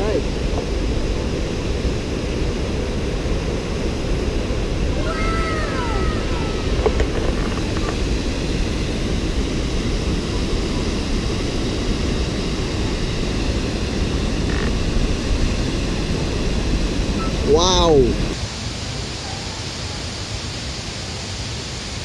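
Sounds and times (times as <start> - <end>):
waterfall rushing: 4.8 - 8.5.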